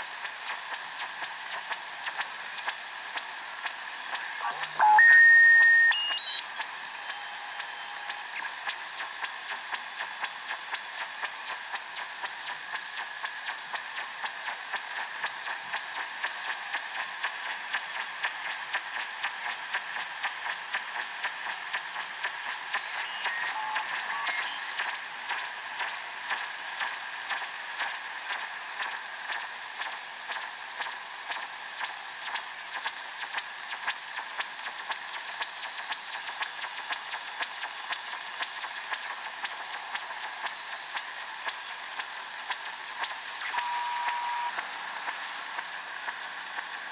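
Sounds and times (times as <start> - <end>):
radio static hiss: 0.0 - 46.9
sharp radio pulses: 4.0 - 15.9, 21.8 - 26.0, 37.6 - 46.9.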